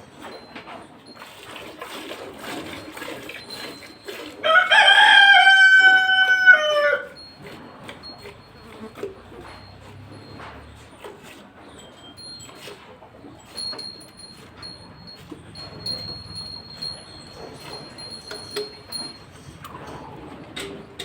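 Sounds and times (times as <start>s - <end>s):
rooster crowing: 4.4s - 7.2s.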